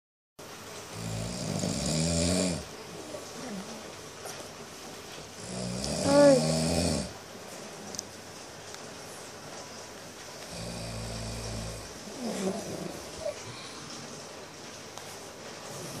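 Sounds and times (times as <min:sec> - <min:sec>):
person snoring: 0:01.0 - 0:02.7, 0:05.4 - 0:07.1, 0:10.5 - 0:13.3.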